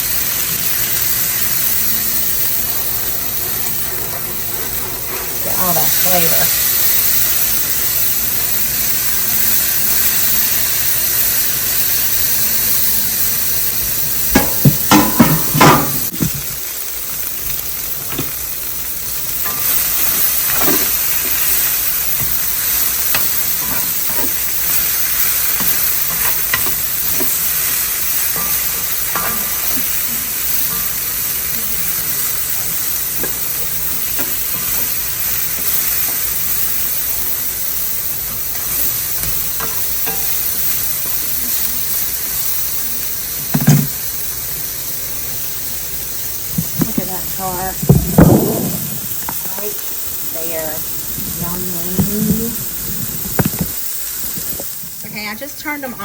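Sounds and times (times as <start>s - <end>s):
vegetables sizzling in oil: 0.0s - 56.0s
loud clanks against pan: 14.3s - 16.4s, 43.5s - 44.0s.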